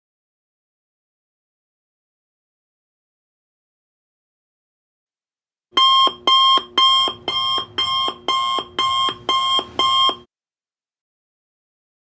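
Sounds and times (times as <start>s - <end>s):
alarm clock ringing: 5.8s - 10.3s.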